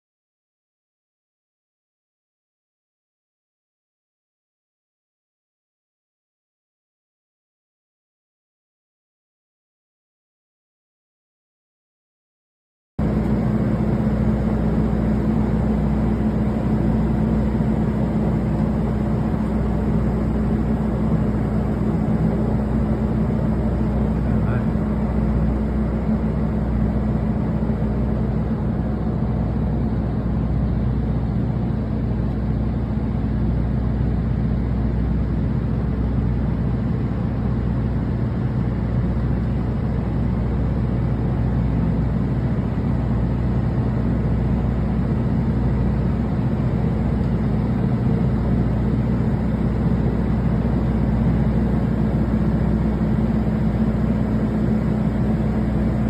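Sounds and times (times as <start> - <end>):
boat engine running: 13.0 - 56.0.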